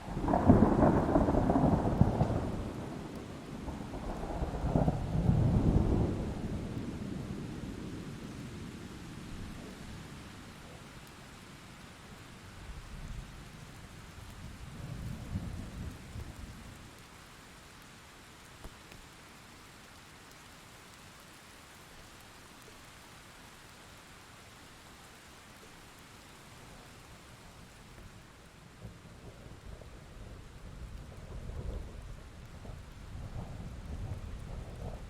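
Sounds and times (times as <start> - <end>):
thunder rumbling: 0.0 - 7.4, 28.8 - 35.0
steady rain: 0.0 - 35.0.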